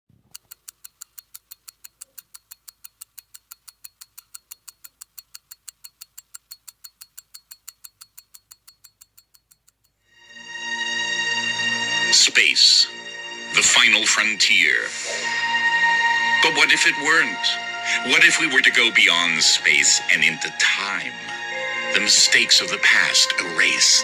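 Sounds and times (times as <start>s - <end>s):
clock ticking: 0.1s - 10.0s
sustained musical chord: 10.1s - 24.0s.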